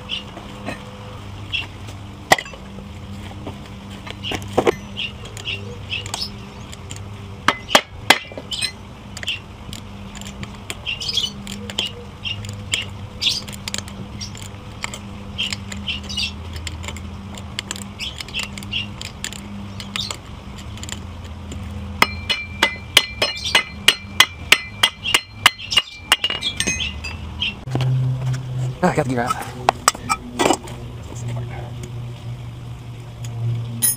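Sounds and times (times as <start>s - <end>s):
ringing hammer taps: 22.0s - 27.2s
metal tools clinking on engine: 22.0s - 27.3s.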